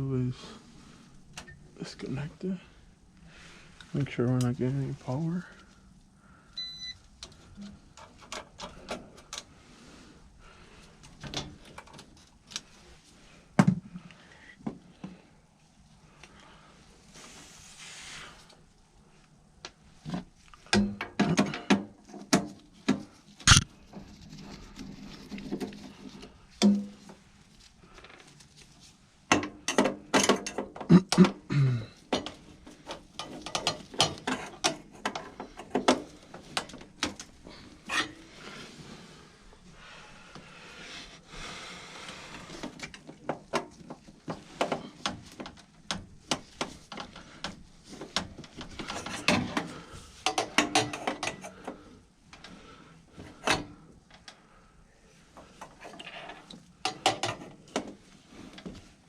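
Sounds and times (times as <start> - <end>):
metallic clatter of hand tools: 32.2 - 36.8, 48.6 - 51.6.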